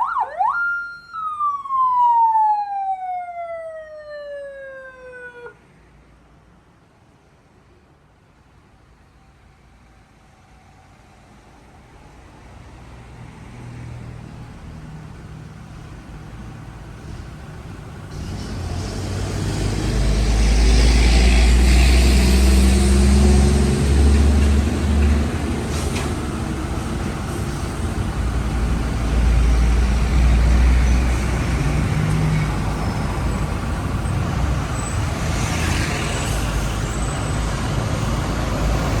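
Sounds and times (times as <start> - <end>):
vehicle engine rumble: 14.1 - 39.0.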